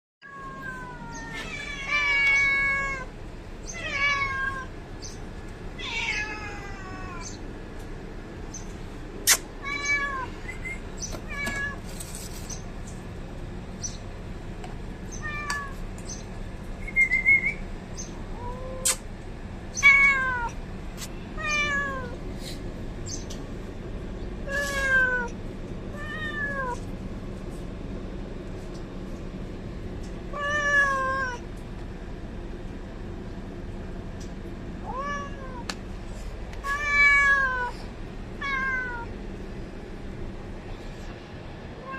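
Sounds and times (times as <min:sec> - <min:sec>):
cat meowing: 0:00.2 - 0:03.1, 0:03.7 - 0:04.7, 0:05.8 - 0:07.4, 0:09.6 - 0:10.4, 0:19.8 - 0:20.6, 0:21.4 - 0:22.2, 0:24.5 - 0:25.3, 0:25.9 - 0:26.8, 0:30.3 - 0:31.4, 0:34.8 - 0:35.7, 0:36.6 - 0:37.8, 0:38.4 - 0:39.1.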